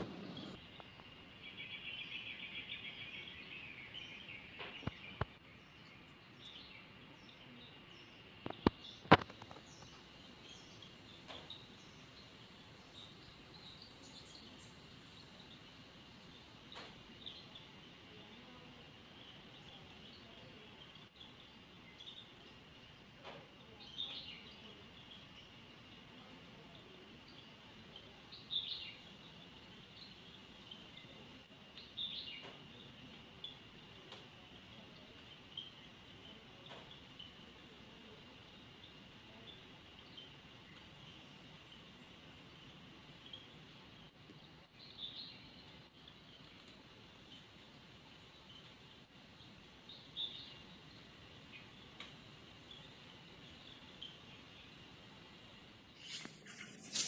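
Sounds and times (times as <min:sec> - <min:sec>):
bird chirps: 0:00.0 - 0:18.6
faint outdoor background: 0:00.0 - 0:57.0
high-pitched hum and hiss: 0:00.0 - 0:57.0.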